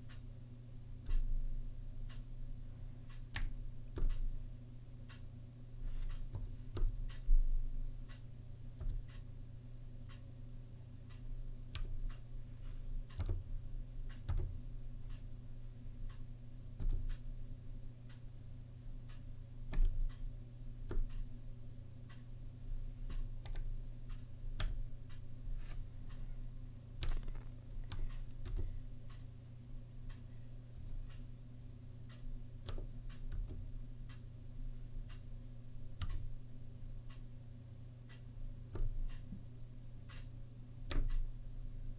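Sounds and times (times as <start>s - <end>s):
low steady hum: 0.0s - 41.9s
keyboard key clicks: 27.0s - 28.7s.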